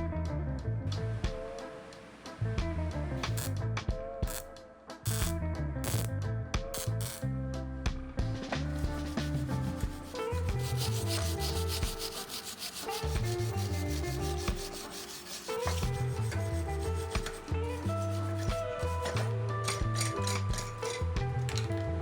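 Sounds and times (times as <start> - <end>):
background music with bass line: 0.0 - 22.0
rubbing scraping workshop sound: 3.2 - 3.5, 5.1 - 6.1, 6.8 - 7.2, 8.5 - 21.7.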